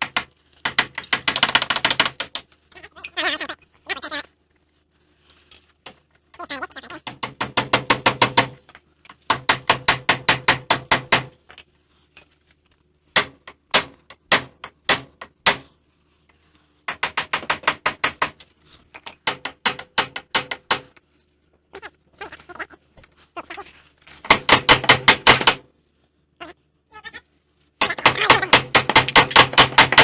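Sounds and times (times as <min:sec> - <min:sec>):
hammer striking chisel on metal: 0:09.3 - 0:11.4, 0:13.2 - 0:15.7, 0:16.9 - 0:18.4, 0:19.2 - 0:21.0, 0:24.2 - 0:25.6, 0:27.8 - 0:30.0.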